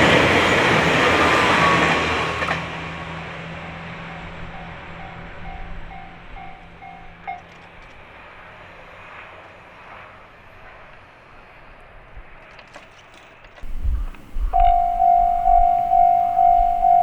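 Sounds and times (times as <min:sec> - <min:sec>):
faint outdoor background noise: 0:10.9 - 0:17.0
level crossing bell dinging: 0:13.7 - 0:17.0.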